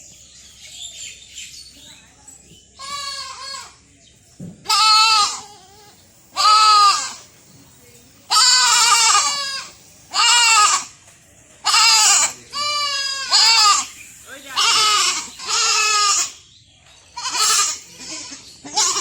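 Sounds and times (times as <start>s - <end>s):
young goat bleating: 2.8s - 3.8s, 4.6s - 7.3s, 8.3s - 11.0s, 11.6s - 16.4s, 17.2s - 19.0s.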